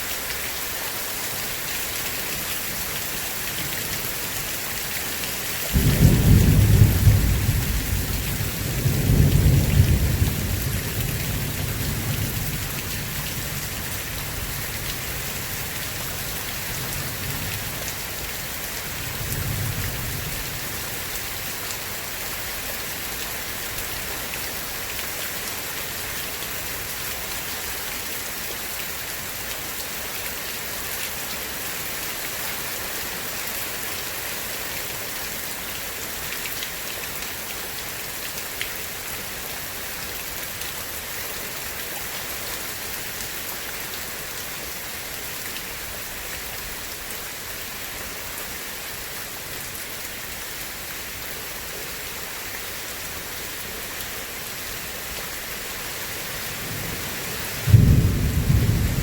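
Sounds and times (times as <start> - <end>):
heavy rain hissing: 0.0 - 24.0, 44.0 - 59.0
thunder rumbling: 57.7 - 59.0.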